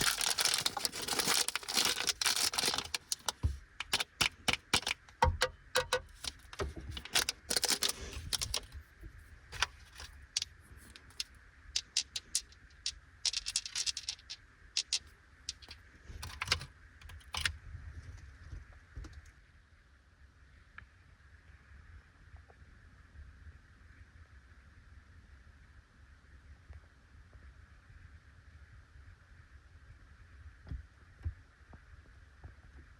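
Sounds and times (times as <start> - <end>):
plastic wrapper crinkling: 0.0 - 8.8, 9.6 - 17.5.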